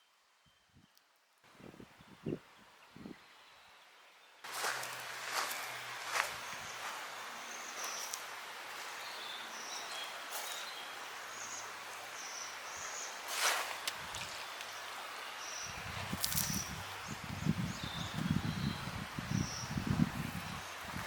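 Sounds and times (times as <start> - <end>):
steady hiss: 4.4 - 21.0.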